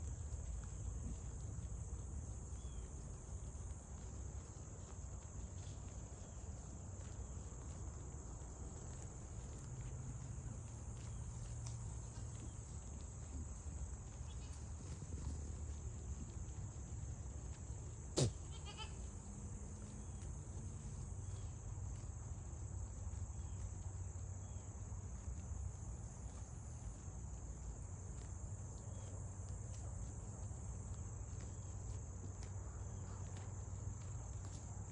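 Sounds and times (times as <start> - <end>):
goat kid bleating: 18.1 - 19.0.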